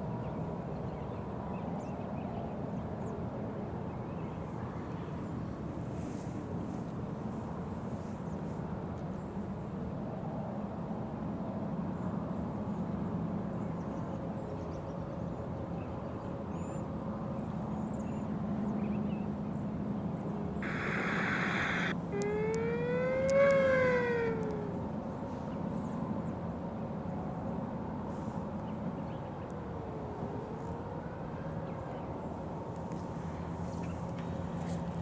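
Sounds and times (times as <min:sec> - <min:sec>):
burst of hiss: 0:20.6 - 0:24.6
steady low hum: 0:20.6 - 0:24.8
warning siren wailing: 0:20.6 - 0:24.9.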